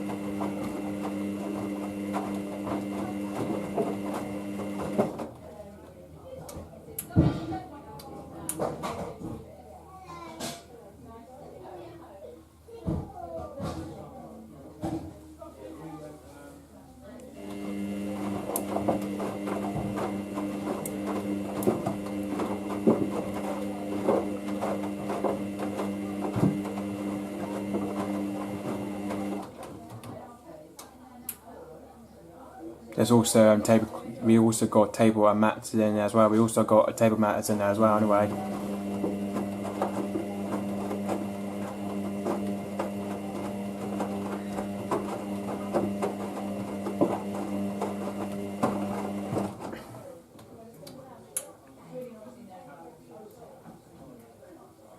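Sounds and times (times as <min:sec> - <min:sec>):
washing machine motor hum: 0:00.0 - 0:05.4, 0:17.4 - 0:29.7, 0:37.0 - 0:49.9.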